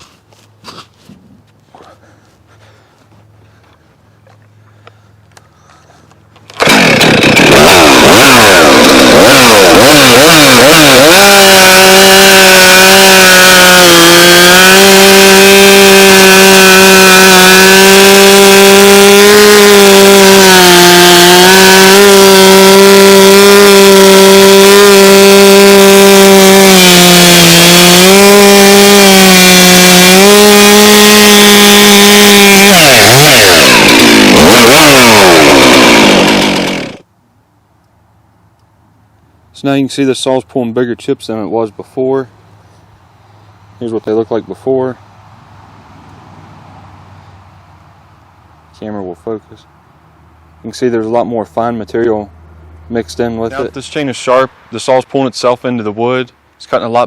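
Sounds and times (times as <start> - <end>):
chainsaw cutting wood: 6.4 - 37.1.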